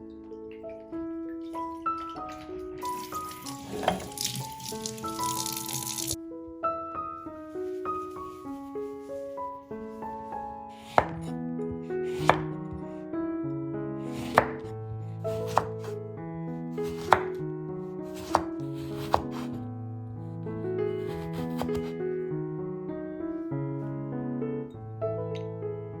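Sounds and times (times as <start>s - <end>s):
soft piano music: 0.0s - 26.0s
knife cutting on cutting board: 3.0s - 6.1s, 10.7s - 11.3s, 12.0s - 12.6s, 14.1s - 14.7s, 15.3s - 16.0s, 16.8s - 17.4s, 18.1s - 19.6s, 21.0s - 22.0s.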